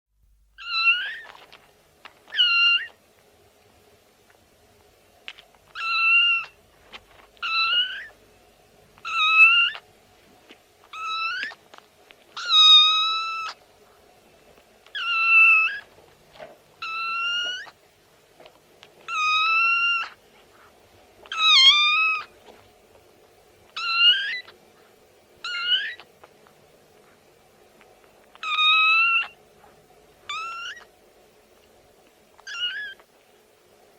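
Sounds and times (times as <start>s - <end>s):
cat meowing: 0.6s - 1.5s, 2.3s - 3.0s, 5.7s - 6.6s, 7.4s - 8.2s, 9.0s - 9.8s, 10.9s - 11.6s, 12.4s - 13.6s, 14.9s - 15.9s, 16.8s - 17.8s, 19.1s - 20.2s, 21.2s - 22.3s, 23.8s - 24.6s, 25.4s - 26.1s, 28.3s - 29.4s, 30.3s - 30.9s, 32.4s - 33.1s.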